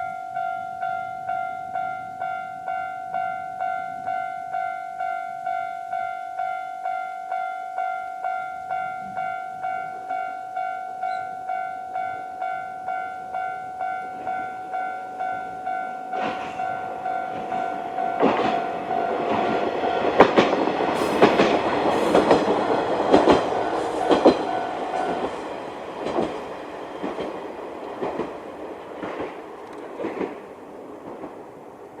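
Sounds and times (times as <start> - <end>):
level crossing warning bell: 0.0 - 28.2
train wheels clacking on rail joints: 16.1 - 31.6.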